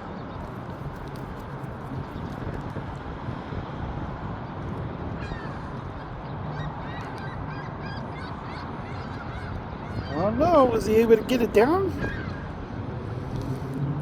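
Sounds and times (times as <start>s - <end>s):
gulls squawking: 5.2s - 12.6s.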